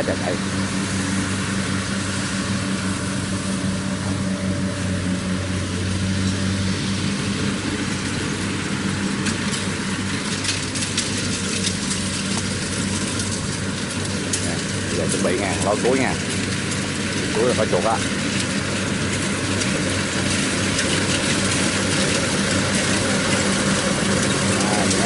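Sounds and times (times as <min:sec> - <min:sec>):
combine harvester engine droning: 0:00.0 - 0:25.0
sharp clicks and crackles: 0:09.2 - 0:25.0.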